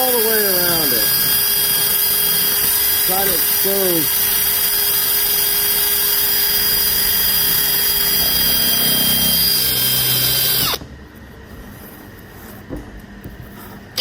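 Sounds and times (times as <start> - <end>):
power drill boring into wood: 0.0 - 10.8.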